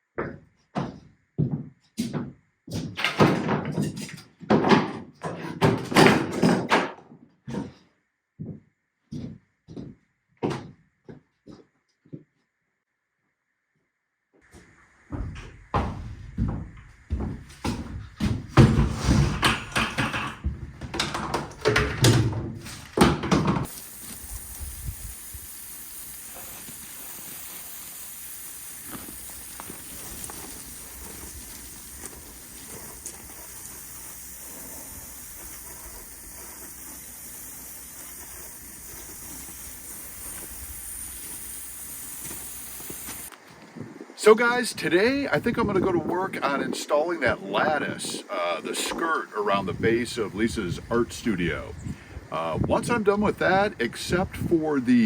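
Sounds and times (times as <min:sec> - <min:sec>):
outdoor air hiss: 0:14.4 - 0:55.0.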